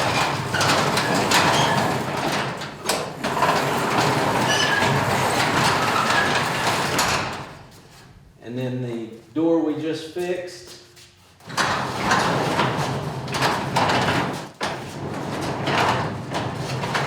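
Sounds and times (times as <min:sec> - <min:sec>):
garage door rolling with squeaks: 0:00.0 - 0:08.1, 0:11.4 - 0:17.0.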